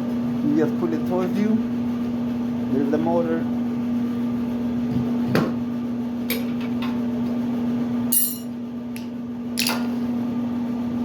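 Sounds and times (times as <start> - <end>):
steady low hum: 0.0 - 11.0
metallic clank with ringing: 8.1 - 8.5.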